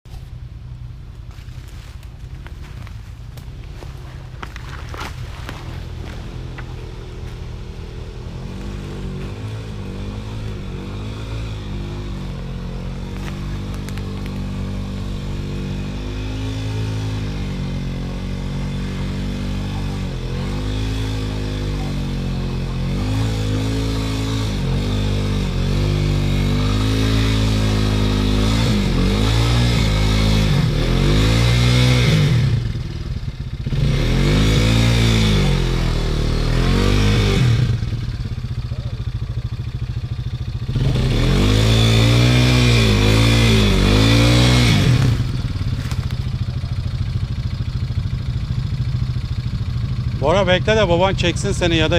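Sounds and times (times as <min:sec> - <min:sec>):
atv engine revving: 0:00.2 - 0:51.9.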